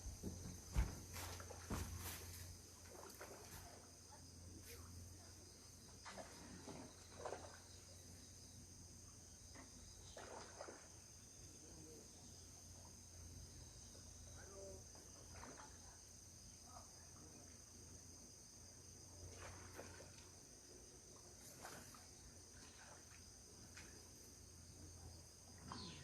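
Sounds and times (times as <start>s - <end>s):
soft knocks and rustles: 0.0s - 2.5s
insects chirring: 0.0s - 26.0s.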